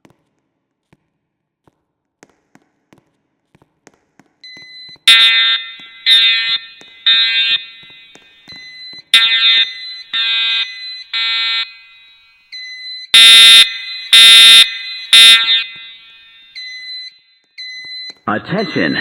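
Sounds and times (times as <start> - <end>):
buzzy evacuation alarm tones: 4.7 - 19.0
thin high beeps: 13.2 - 16.8, 18.4 - 19.0.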